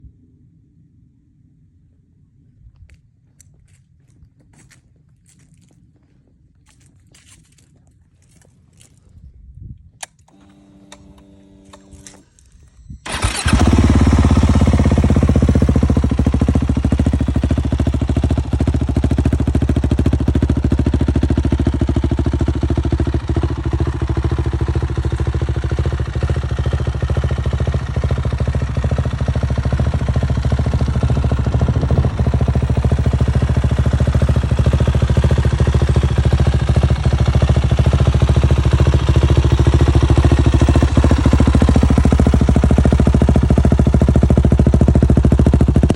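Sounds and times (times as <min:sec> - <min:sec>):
motorcycle engine starting and idling: 0:09.9 - 0:45.9.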